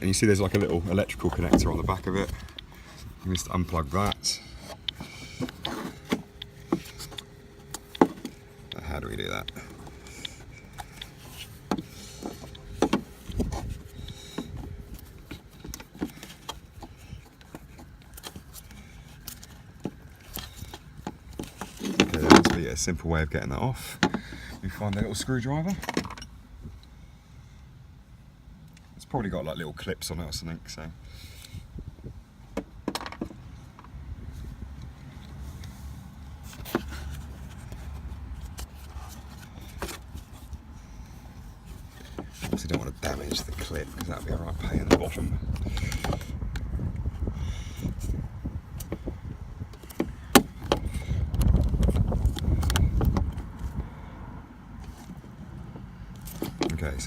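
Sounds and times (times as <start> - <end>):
wind rumble on microphone: 1.1 - 3.5, 12.6 - 15.4, 31.5 - 32.3, 42.6 - 54.5.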